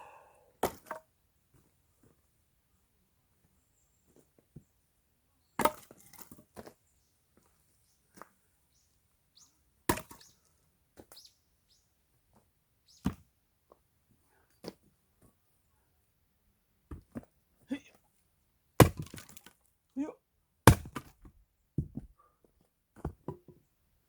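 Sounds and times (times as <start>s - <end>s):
axe chopping wood: 0.6s - 1.0s, 5.6s - 6.2s, 9.9s - 10.3s, 18.8s - 19.4s, 20.6s - 22.0s.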